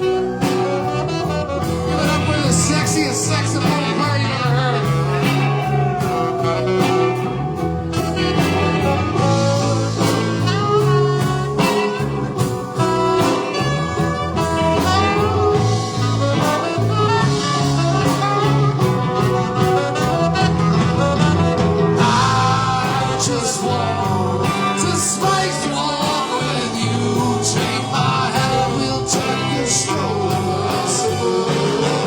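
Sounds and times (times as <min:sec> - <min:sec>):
band with bass guitar and drums: 0:00.0 - 0:32.0
saxophone solo: 0:00.0 - 0:32.0.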